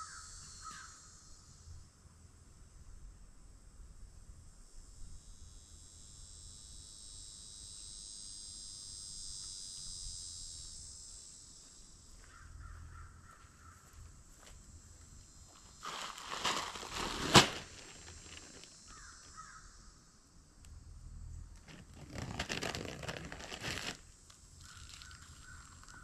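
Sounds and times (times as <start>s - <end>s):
crows cawing: 0.0s - 1.0s, 12.2s - 14.0s, 18.9s - 19.8s, 24.6s - 26.0s
steady high buzz: 0.0s - 26.0s.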